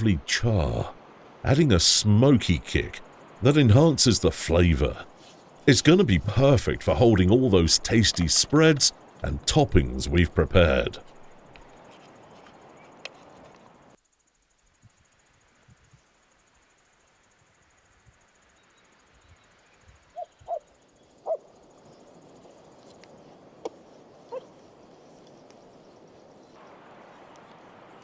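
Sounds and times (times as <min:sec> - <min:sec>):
faint outdoor background: 0:00.0 - 0:28.0.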